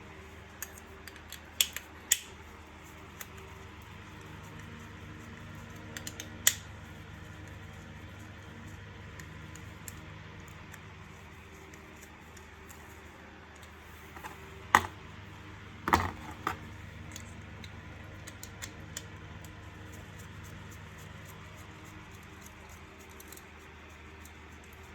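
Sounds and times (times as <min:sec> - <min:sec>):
plastic parts clicking: 0:14.1 - 0:15.0, 0:15.9 - 0:17.2.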